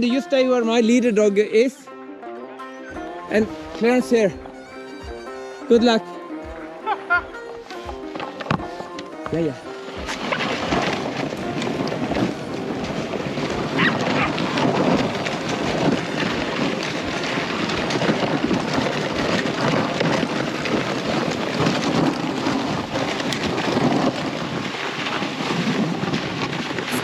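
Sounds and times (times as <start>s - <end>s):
short high sounds: 2.6s - 6.8s
sled runners rushing over snow: 2.9s - 27.0s.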